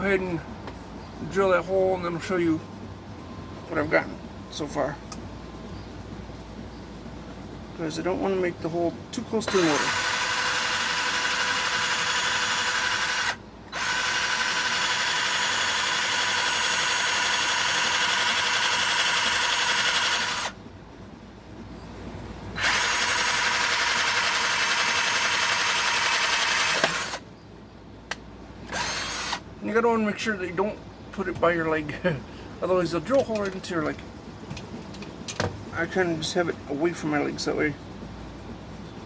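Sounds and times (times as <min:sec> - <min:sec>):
cordless drill whining: 0:09.5 - 0:20.6, 0:22.6 - 0:27.2, 0:28.7 - 0:29.4.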